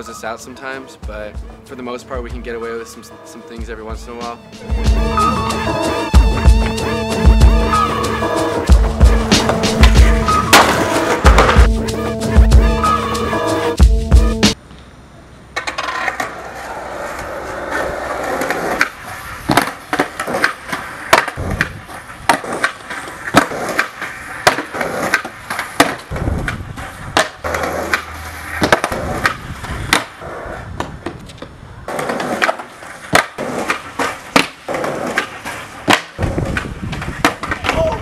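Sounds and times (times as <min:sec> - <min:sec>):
skateboard wheels rolling on pavement: 0:00.0 - 0:38.0
skateboards popping and landing: 0:04.7 - 0:11.8, 0:15.5 - 0:38.0.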